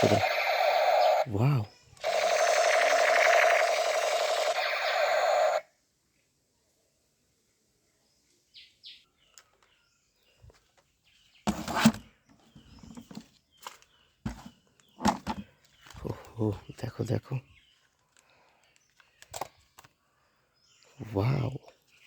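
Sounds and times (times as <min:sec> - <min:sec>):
toy gun buzzing: 0:00.0 - 0:01.3, 0:02.0 - 0:05.6
clicks and knocks of plastic toy: 0:19.2 - 0:19.9.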